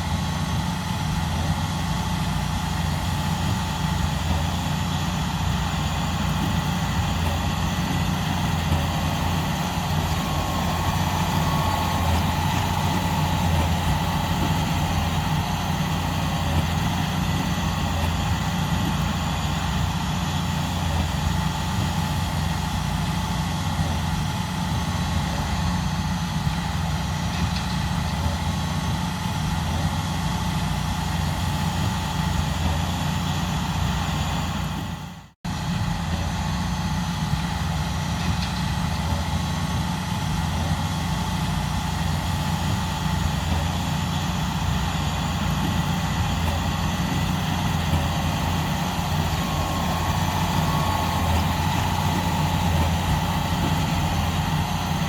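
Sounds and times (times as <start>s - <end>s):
tractor diesel engine running: 0.0s - 55.0s.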